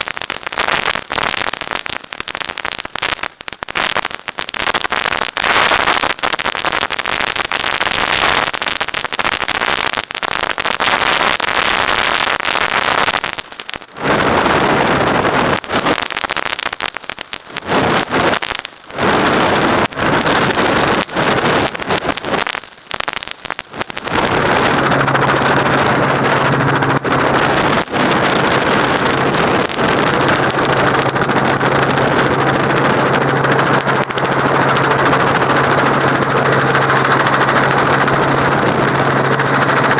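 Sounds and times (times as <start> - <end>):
steady low hum: 24.0 - 39.9
helicopter rotor and engine noise: 24.1 - 39.9.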